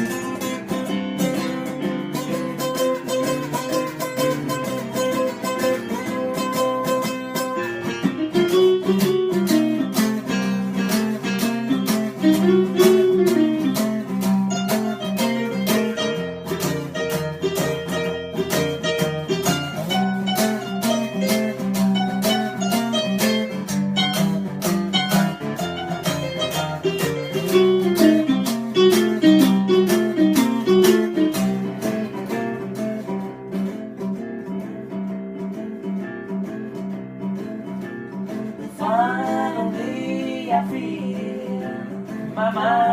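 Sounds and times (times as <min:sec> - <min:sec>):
melody with sliding notes: 0:00.0 - 0:32.9
picked acoustic guitar: 0:00.0 - 0:42.9.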